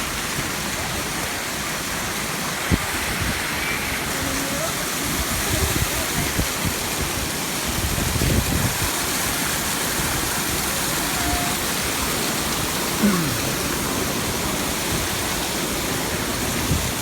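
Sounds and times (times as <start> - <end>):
waterfall rushing: 0.0 - 17.0
faint voices: 12.9 - 14.0.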